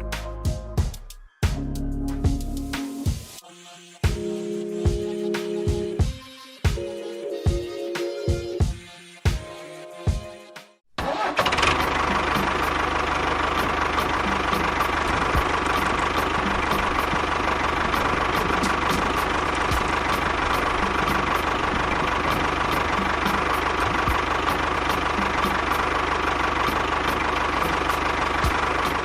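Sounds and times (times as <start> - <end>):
small engine running: 11.0 - 29.0.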